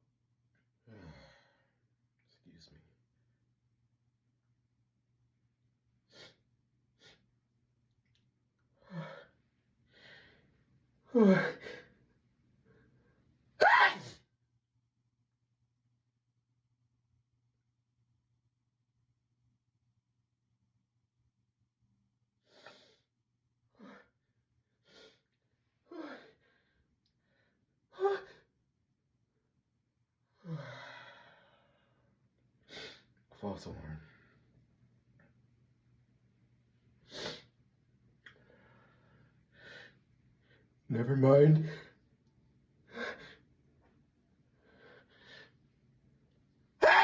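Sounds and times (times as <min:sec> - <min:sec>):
person gasping before sneeze: 0:13.6 - 0:14.2
person gasping breaths: 0:30.4 - 0:32.0
person sniffing: 0:37.1 - 0:37.5.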